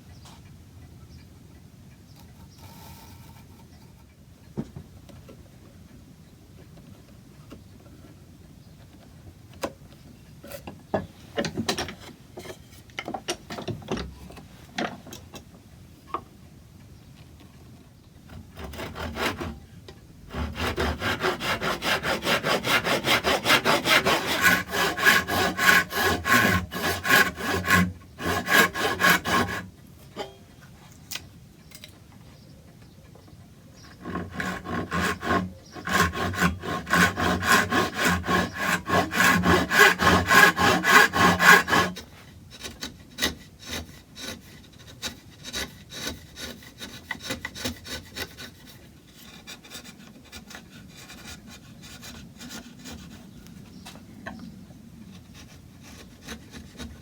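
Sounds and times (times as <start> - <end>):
hand saw cutting wood: 18.3 - 19.6, 20.3 - 29.7, 33.8 - 53.8, 55.1 - 57.0.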